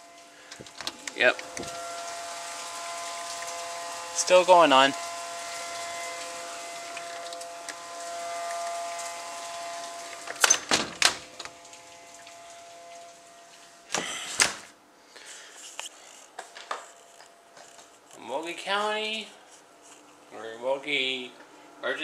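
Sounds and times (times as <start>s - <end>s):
tornado warning siren wailing: 0.0s - 13.9s.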